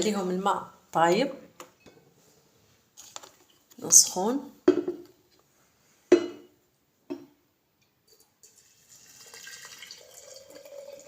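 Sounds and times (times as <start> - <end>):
filling vessel tone: 8.1 - 11.0
hot water pouring into vessel: 8.4 - 11.0.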